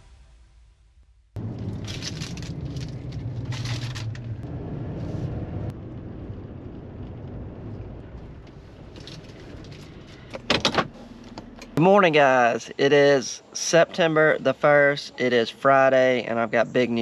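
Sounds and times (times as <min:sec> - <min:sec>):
engine rumbling: 0:01.3 - 0:17.0.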